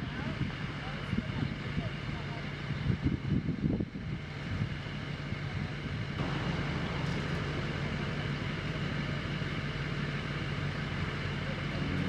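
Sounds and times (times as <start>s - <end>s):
tractor engine running: 6.2s - 12.0s.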